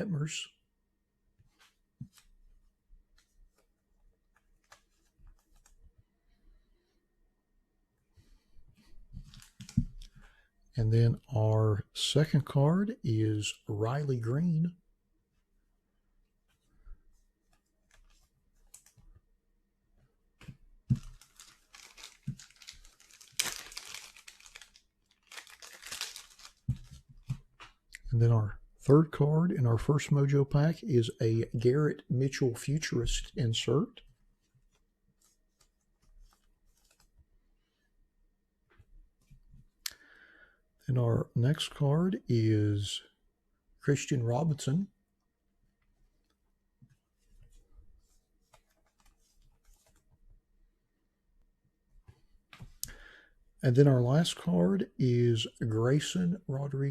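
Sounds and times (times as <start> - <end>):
trading cards clicking and rustling: 20.9 - 27.8.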